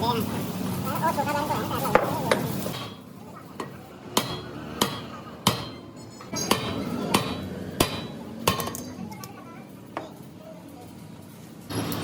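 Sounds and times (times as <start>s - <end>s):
hammer striking metal: 3.6s - 8.9s.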